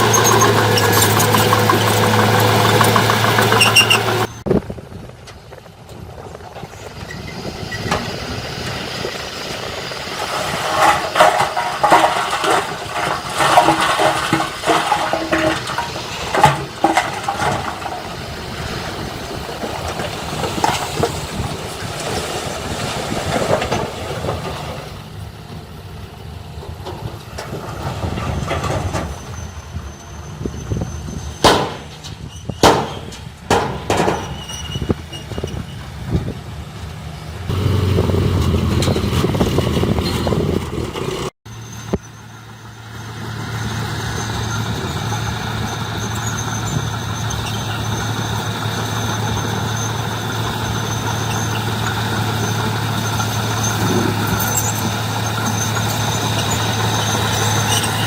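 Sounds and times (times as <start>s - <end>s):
heavy machinery engine: 0.0s - 58.0s
metal clanks and knocks: 10.2s - 18.3s, 19.6s - 22.1s, 26.6s - 29.5s, 31.4s - 35.6s.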